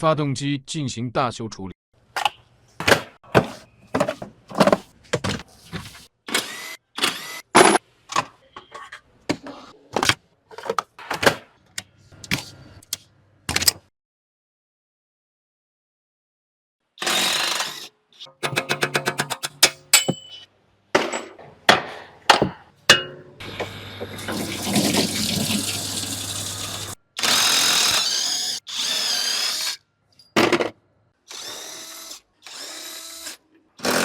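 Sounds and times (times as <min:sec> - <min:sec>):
power tools running: 0:06.3 - 0:07.8, 0:23.4 - 0:29.8, 0:31.3 - 0:34.0
hand tools knocking metal: 0:18.3 - 0:20.4.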